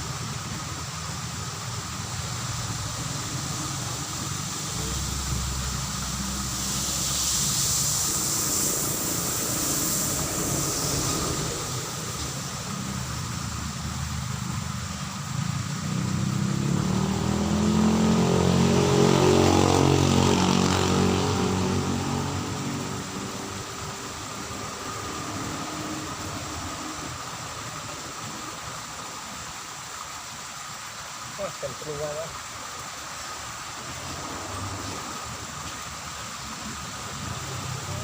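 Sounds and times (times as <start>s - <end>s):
steady outdoor hiss: 0.0s - 38.0s
vehicle engine passing: 1.4s - 28.8s, 33.2s - 38.0s.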